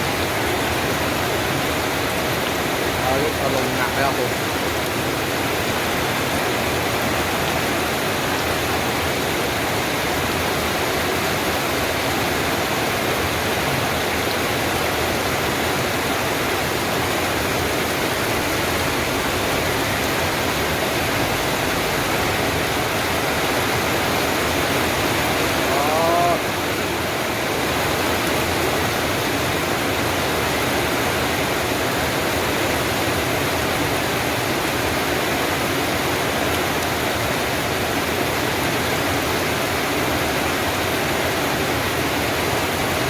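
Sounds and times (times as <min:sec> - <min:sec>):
heavy rain pouring: 0:00.0 - 0:43.0.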